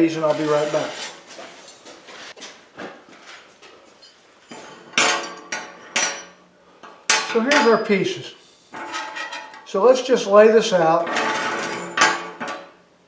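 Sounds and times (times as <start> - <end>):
steel rods clinking and clanking: 4.5 - 6.4, 7.1 - 7.9, 8.8 - 9.7, 10.8 - 12.7.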